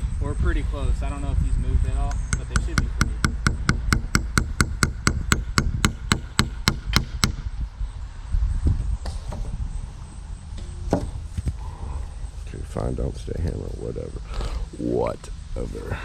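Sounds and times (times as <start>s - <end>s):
hammer tapping nail into wood: 2.1s - 7.4s
scattered knocks: 2.2s - 7.4s.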